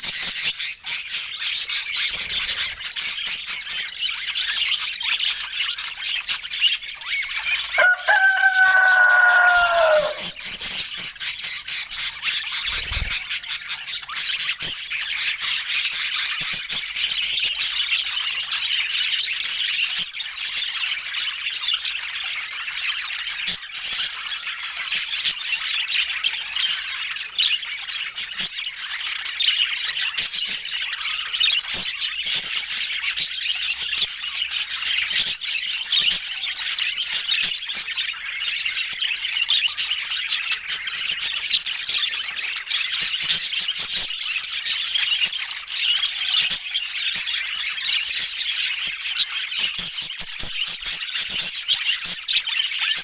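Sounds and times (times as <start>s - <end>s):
budgerigars chattering: 0.1s - 16.1s.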